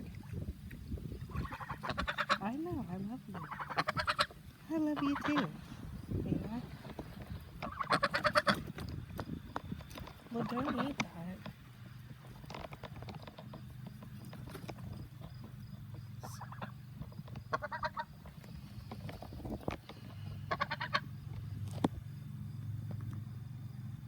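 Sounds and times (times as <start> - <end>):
waterfowl honking: 1.3 - 5.9, 6.8 - 8.8, 10.3 - 11.6, 14.4 - 19.2, 19.9 - 21.2.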